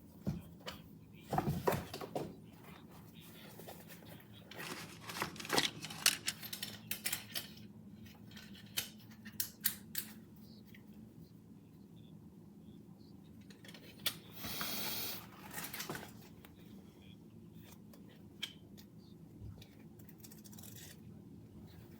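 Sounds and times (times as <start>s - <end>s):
rustling: 2.8s - 6.7s.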